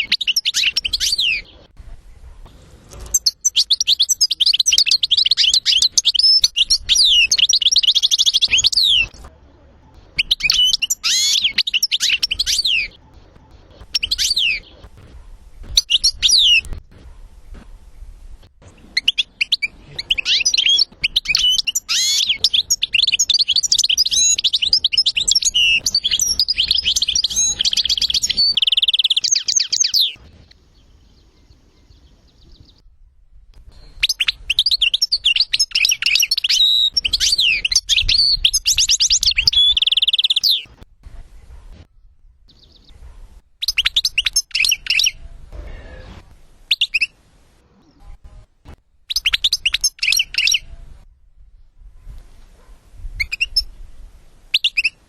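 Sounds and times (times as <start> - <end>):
goldfinch song: 0.0 - 2.3, 3.0 - 9.3, 9.9 - 33.0, 33.7 - 45.6, 49.1 - 50.9, 52.6 - 53.9, 54.5 - 55.0.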